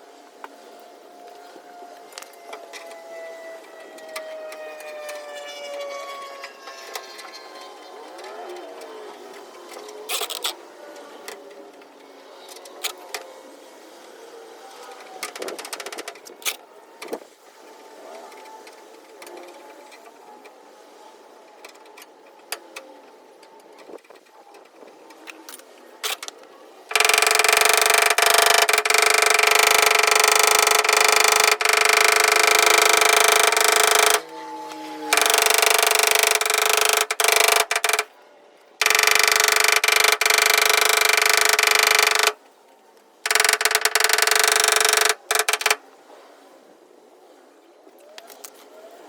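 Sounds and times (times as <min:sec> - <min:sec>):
motorised tool whining: 0:26.9 - 0:38.2, 0:38.8 - 0:42.4.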